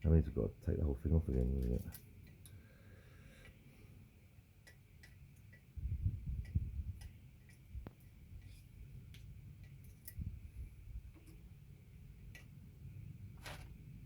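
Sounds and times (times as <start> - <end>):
metallic clicks of bicycle parts: 4.6 - 5.7.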